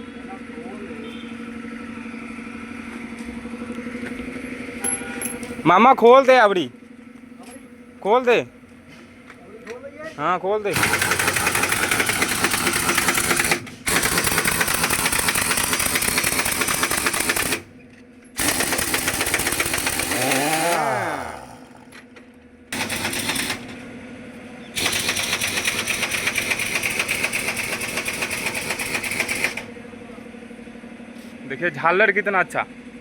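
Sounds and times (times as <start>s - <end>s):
pneumatic impact wrench hammering: 10.7s - 17.7s, 18.4s - 22.1s, 22.7s - 23.9s, 24.8s - 29.7s.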